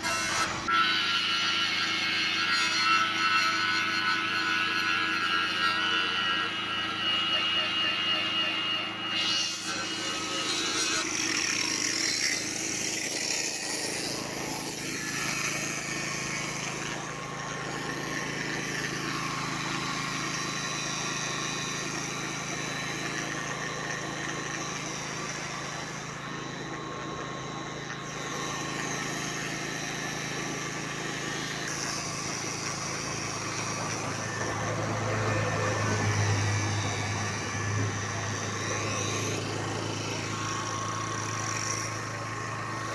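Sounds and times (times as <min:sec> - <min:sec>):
vehicle engine humming: 0:32.6 - 0:42.9
road traffic hiss: 0:33.2 - 0:42.9.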